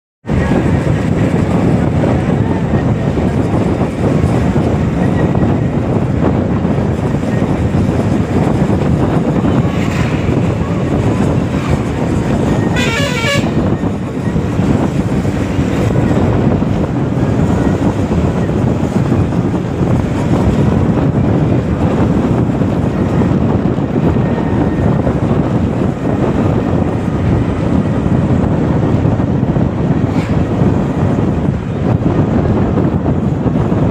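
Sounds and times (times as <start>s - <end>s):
moving vehicle rumble: 0.2s - 33.9s
road and wind noise: 0.2s - 33.9s
vehicle horn: 12.4s - 13.9s.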